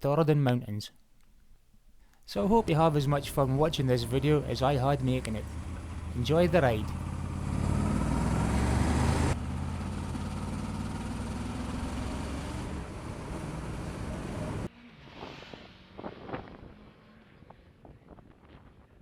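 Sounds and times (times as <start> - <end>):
wind and road noise: 2.3 - 19.0
motorcycle engine running: 2.4 - 14.7.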